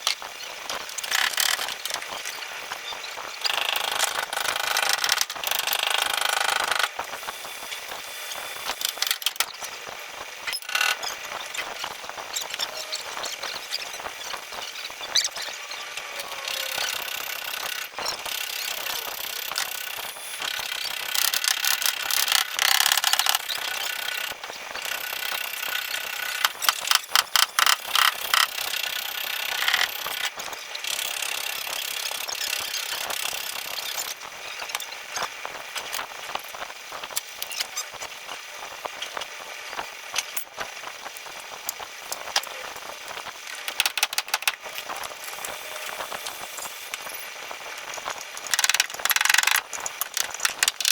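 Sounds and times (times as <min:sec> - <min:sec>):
metal tools squeaking and scraping: 0:10.5 - 0:24.2.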